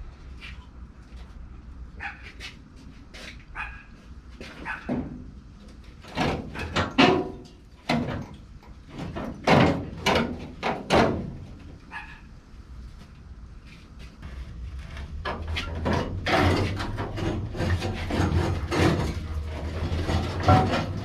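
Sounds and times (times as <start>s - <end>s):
dog barking: 2.0s - 2.4s, 3.5s - 4.0s, 4.6s - 4.9s, 11.9s - 12.3s.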